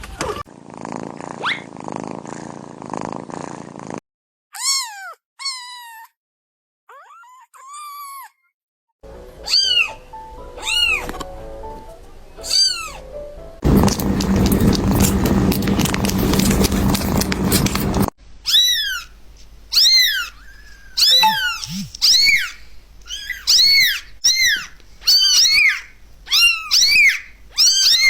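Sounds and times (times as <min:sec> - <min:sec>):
kitten mewing: 0:12.4 - 0:13.0, 0:19.7 - 0:28.0.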